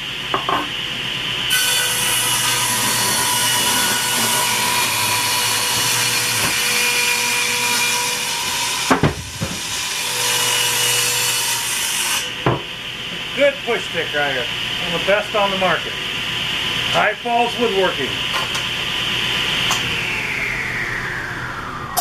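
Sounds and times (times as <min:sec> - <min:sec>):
table saw cutting wood: 0:01.4 - 0:12.4, 0:18.6 - 0:22.0.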